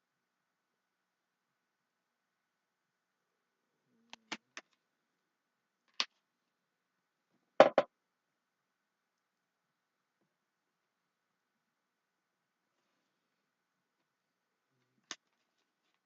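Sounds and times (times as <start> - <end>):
quick double knock: 7.6 - 7.9.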